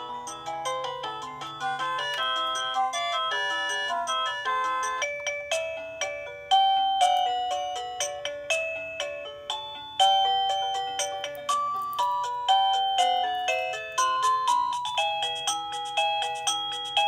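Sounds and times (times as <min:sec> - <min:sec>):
electronic doorbell chime tune: 0:00.0 - 0:17.0.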